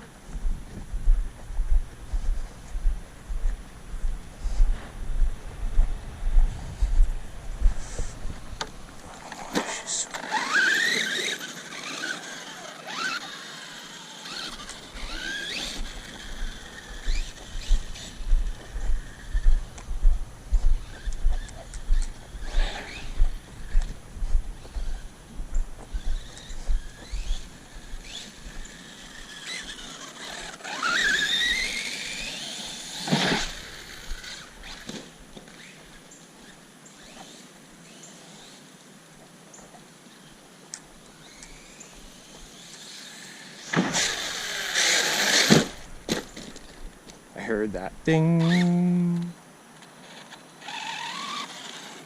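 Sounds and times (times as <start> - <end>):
low uneven rumbling and thumps: 0.3 - 9.0
electric motor whining: 7.2 - 19.9, 20.6 - 38.4, 41.1 - 46.8, 48.3 - 49.3.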